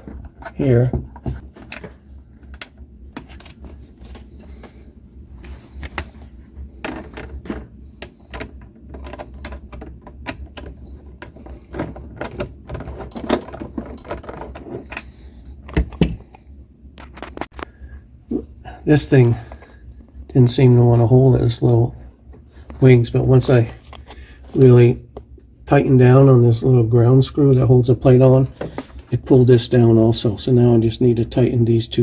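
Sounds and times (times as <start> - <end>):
small metal parts clicking and rattling: 8.3 - 15.2.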